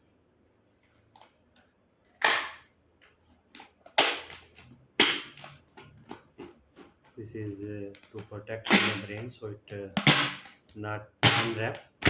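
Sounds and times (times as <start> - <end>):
adhesive tape ripping: 8.7 - 9.2, 11.2 - 11.7.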